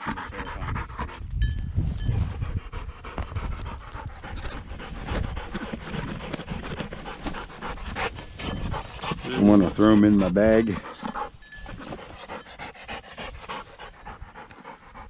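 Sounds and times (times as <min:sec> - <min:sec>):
dog panting: 0:00.0 - 0:15.0.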